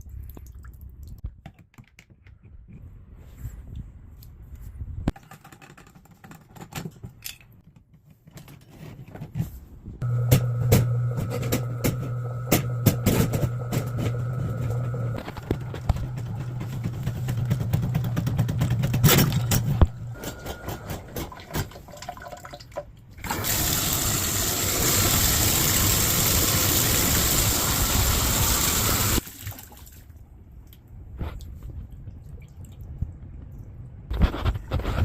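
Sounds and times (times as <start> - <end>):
low hum with rapid clicking: 10.0 - 20.2
water running into bathtub: 21.1 - 30.0.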